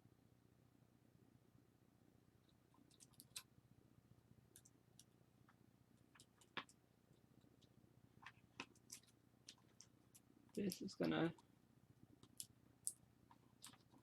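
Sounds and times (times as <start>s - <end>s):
low steady hum: 0.0s - 14.0s
small parts clicking: 2.8s - 3.5s, 7.6s - 11.4s, 12.2s - 14.0s.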